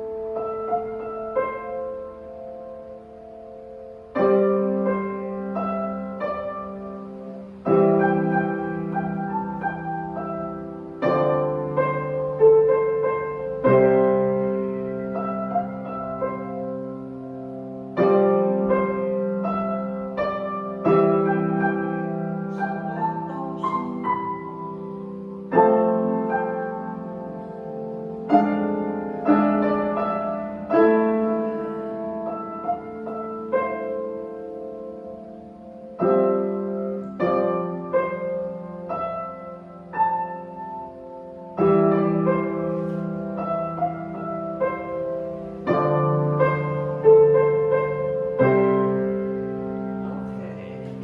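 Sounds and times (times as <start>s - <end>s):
slow solo piano: 0.0s - 51.0s.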